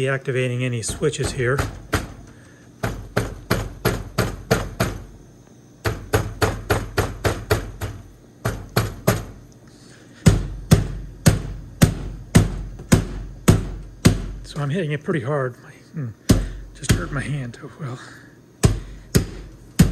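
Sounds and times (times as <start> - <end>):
hand knocking on pinball cabinet: 0.9 - 5.1, 5.8 - 9.4, 10.3 - 14.5, 16.3 - 17.4, 18.6 - 19.9.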